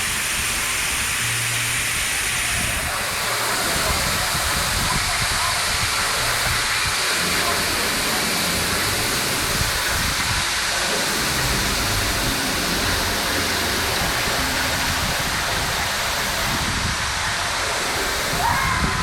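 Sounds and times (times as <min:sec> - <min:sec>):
wind buffeting microphone: 0:02.4 - 0:07.0, 0:09.4 - 0:10.6, 0:13.8 - 0:19.0.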